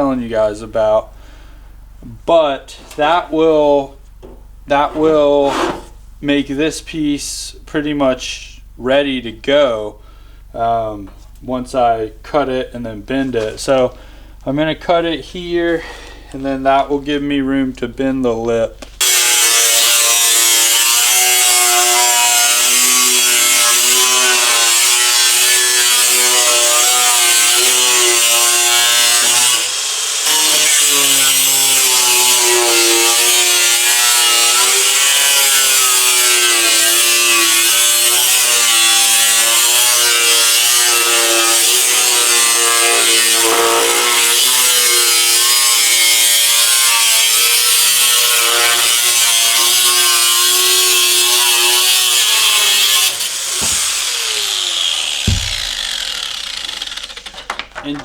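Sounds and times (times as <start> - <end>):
power tool cutting sheet steel: 4.8 - 6.0, 19.0 - 57.6.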